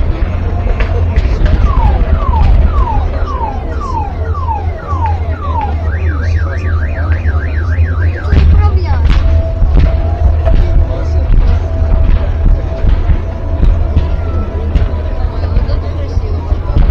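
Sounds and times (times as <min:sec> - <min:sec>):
sharp cracks: 0:00.0 - 0:15.2
heavy low rumble: 0:00.0 - 0:16.9
car alarm cycling tones: 0:01.6 - 0:09.8.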